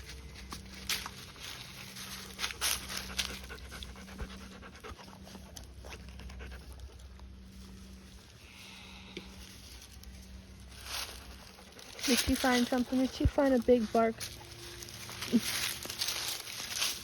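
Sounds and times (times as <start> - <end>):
dog panting: 2.5 - 7.1.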